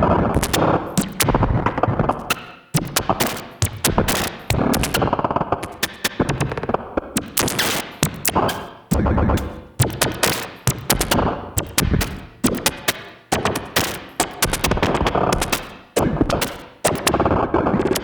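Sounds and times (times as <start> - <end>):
glitchy modular synthesizer: 0.2 - 18.0
sharp clicks: 7.2 - 13.0.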